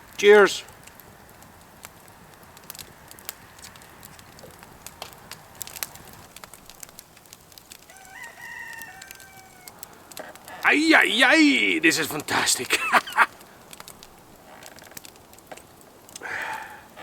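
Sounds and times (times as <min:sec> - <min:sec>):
campfire crackling: 0:00.0 - 0:17.0
rooster crowing: 0:07.9 - 0:09.9.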